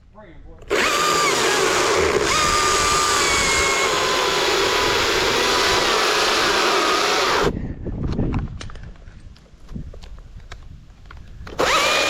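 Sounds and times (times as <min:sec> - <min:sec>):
chainsaw revving under load: 0:00.7 - 0:07.5, 0:11.5 - 0:12.0.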